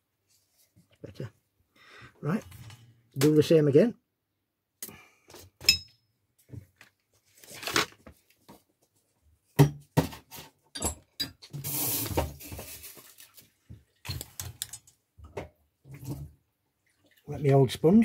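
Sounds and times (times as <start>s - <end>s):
small tools clicking and tapping: 14.1s - 15.0s.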